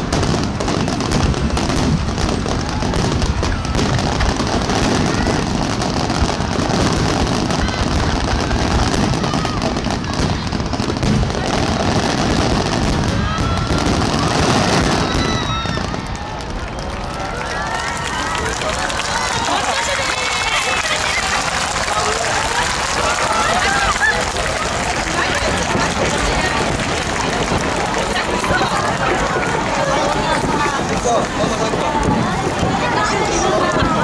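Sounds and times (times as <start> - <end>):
fireworks bursting and crackling: 0.0 - 34.0
faint firework whistles: 12.6 - 16.2.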